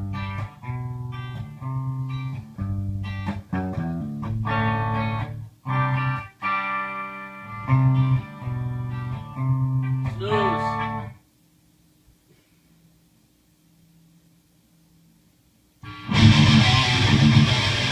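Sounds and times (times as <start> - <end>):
electric guitar metal riff: 3.0 - 11.2, 15.8 - 17.9.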